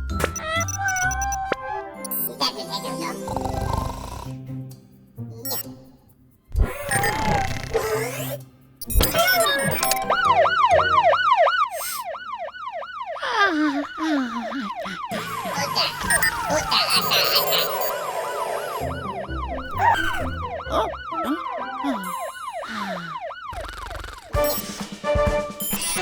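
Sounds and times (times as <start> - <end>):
cartoon sound effects: 0.2 - 3.3, 6.6 - 12.2, 13.2 - 24.7
cartoon fire truck siren wailing: 0.4 - 2.3, 9.0 - 26.0.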